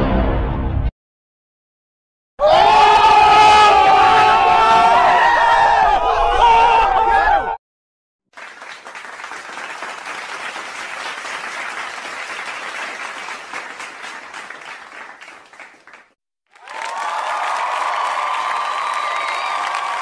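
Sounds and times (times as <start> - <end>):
crowd applauding: 8.3 - 20.0.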